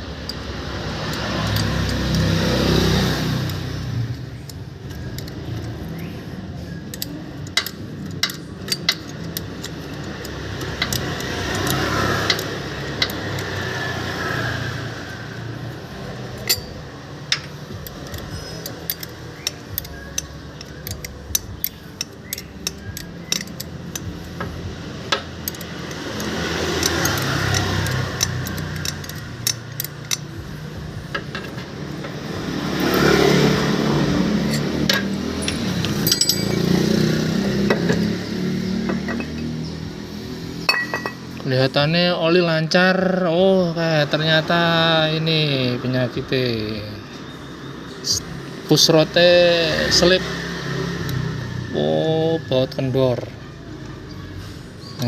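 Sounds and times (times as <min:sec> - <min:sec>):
vehicle engine revving: 0:00.0 - 0:06.2, 0:08.6 - 0:42.0, 0:47.7 - 0:54.8
metal tools clinking: 0:00.1 - 0:02.4, 0:04.3 - 0:13.8, 0:16.2 - 0:38.2, 0:38.8 - 0:39.8, 0:40.6 - 0:41.5.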